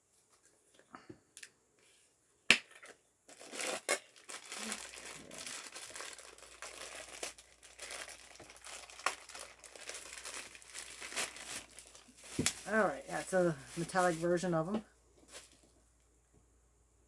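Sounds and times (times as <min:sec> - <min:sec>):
packaging crinkling and rustling: 0:03.3 - 0:15.8.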